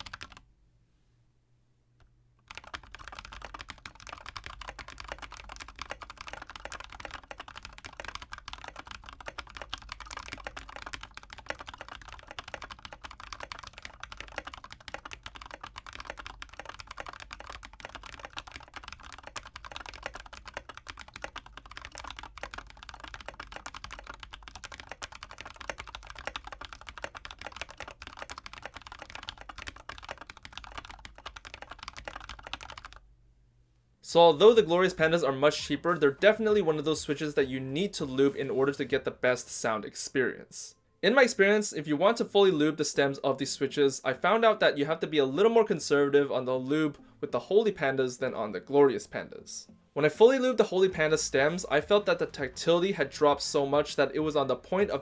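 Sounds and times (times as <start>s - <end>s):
fast typing on mechanical keyboard: 0.0s - 0.4s, 2.5s - 33.0s.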